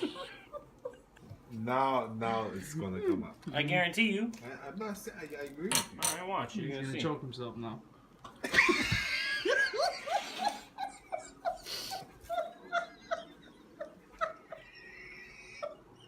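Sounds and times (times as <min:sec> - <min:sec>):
man laughing: 0:08.4 - 0:16.0.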